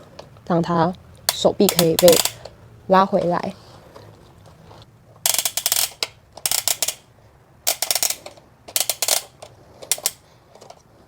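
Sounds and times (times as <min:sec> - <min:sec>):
plastic gears clicking: 0:01.3 - 0:02.5, 0:05.3 - 0:07.1, 0:07.7 - 0:10.2.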